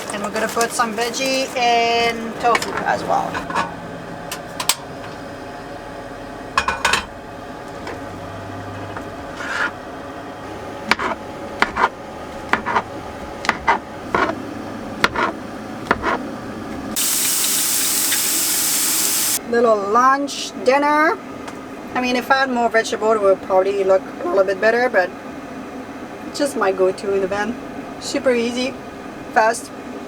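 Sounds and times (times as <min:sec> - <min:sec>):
spatula scraping frying pan: 0:09.3 - 0:09.8, 0:13.5 - 0:14.4
steady hiss: 0:17.0 - 0:19.4.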